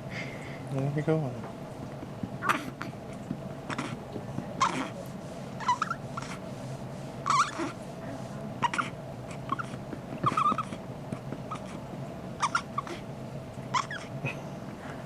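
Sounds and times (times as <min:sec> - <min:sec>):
baby squeaking: 0:04.6 - 0:05.0, 0:05.6 - 0:06.4, 0:07.3 - 0:07.8, 0:08.6 - 0:08.9, 0:09.5 - 0:10.8, 0:11.5 - 0:11.8, 0:12.4 - 0:13.0, 0:13.7 - 0:14.1.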